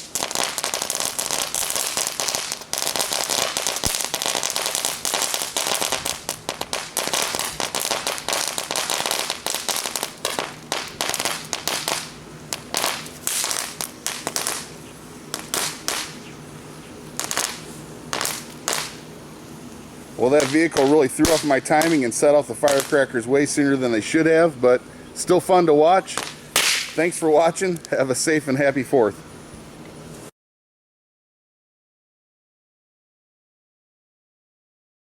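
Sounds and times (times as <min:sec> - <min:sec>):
firecrackers banging: 0:00.0 - 0:16.4, 0:17.0 - 0:19.1, 0:20.2 - 0:23.4, 0:26.1 - 0:27.6.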